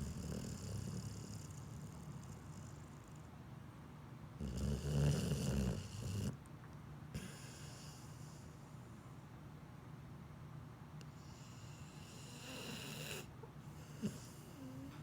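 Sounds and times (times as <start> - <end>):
dog snoring: 0.0 - 3.3, 4.4 - 6.4, 7.2 - 8.5, 11.1 - 15.0.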